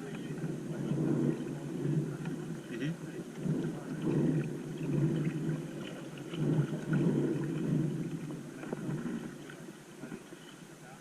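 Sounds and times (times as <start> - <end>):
wind buffeting microphone: 0.0 - 10.4.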